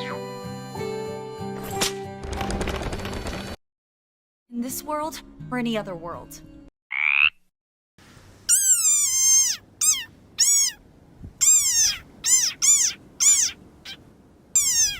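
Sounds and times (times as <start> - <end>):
high squeaky meow-like calls: 8.5 - 10.8, 11.4 - 14.9.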